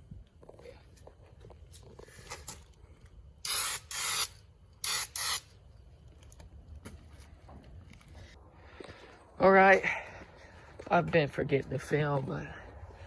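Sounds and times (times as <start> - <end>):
aerosol spray can spraying: 3.5 - 5.4.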